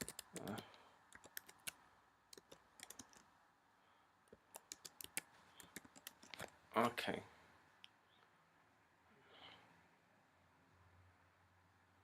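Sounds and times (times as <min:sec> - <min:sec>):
faint keyboard typing: 0:00.0 - 0:03.3, 0:04.3 - 0:06.6.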